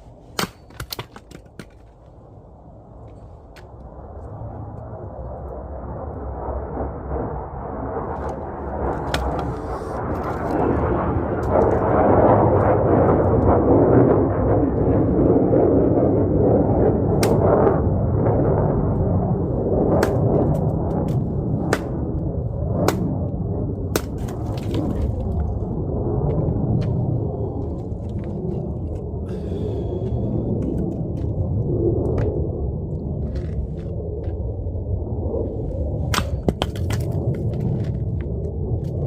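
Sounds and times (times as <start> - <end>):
low rumble: 1.4 - 39.0
firewood cracking: 22.8 - 25.5, 36.1 - 38.3.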